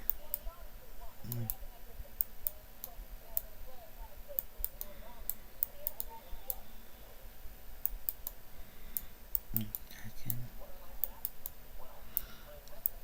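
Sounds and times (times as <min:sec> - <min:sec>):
faint distant voices: 0:00.0 - 0:13.0
sharp irregular clicks: 0:04.4 - 0:06.6, 0:07.8 - 0:11.6.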